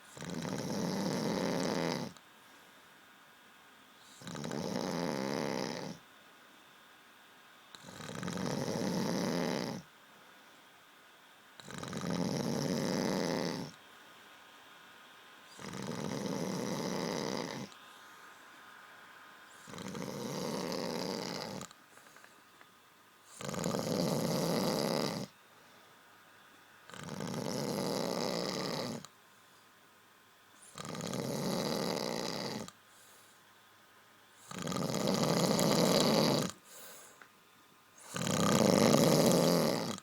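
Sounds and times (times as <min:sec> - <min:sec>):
person snoring: 0:00.1 - 0:02.2, 0:04.1 - 0:06.0, 0:07.8 - 0:09.8, 0:11.6 - 0:13.8, 0:15.5 - 0:17.8, 0:19.6 - 0:21.7, 0:23.3 - 0:25.3, 0:26.9 - 0:29.1, 0:30.7 - 0:32.7, 0:34.4 - 0:37.2, 0:38.0 - 0:40.0.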